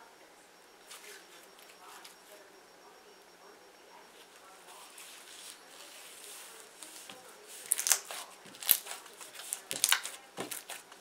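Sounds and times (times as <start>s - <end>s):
slime squished by hand: 7.6s - 10.8s.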